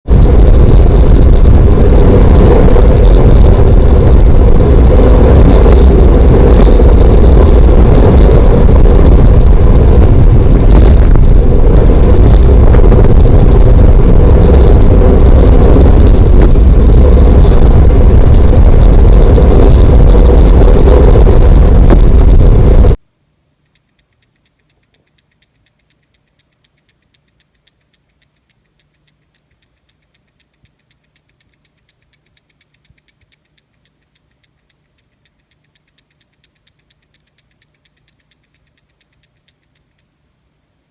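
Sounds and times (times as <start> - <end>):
loud distorted rattling rumble: 0.1 - 23.0
faint ticks: 2.4 - 11.1, 23.5 - 40.2.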